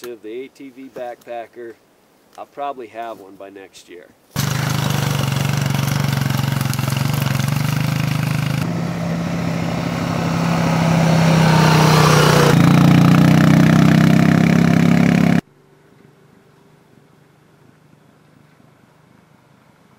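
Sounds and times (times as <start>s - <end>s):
atv engine running: 4.4s - 15.4s.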